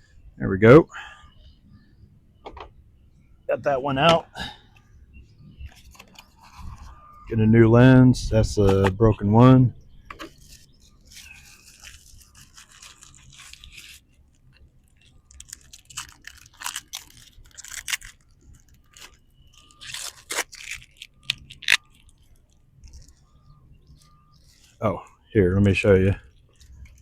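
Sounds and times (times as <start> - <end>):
soft rustle: 5.4 - 7.4, 10.1 - 24.8
plastic parts scraping and clicking: 5.6 - 7.0, 10.1 - 24.8.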